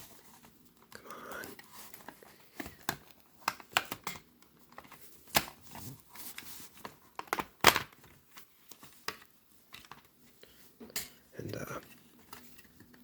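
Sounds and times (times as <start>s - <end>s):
plastic cassette clicks and snaps: 2.6s - 5.6s.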